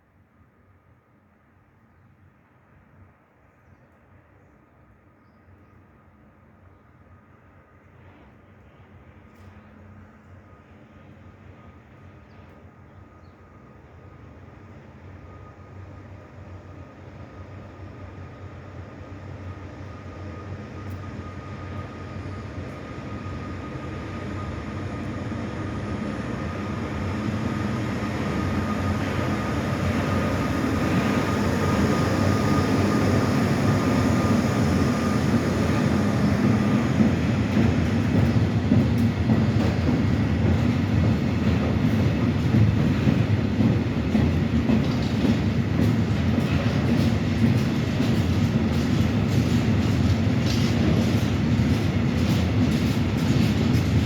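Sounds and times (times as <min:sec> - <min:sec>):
freight train rumbling past: 0:06.4 - 0:54.0
wheels clicking over rail joints: 0:37.5 - 0:54.0.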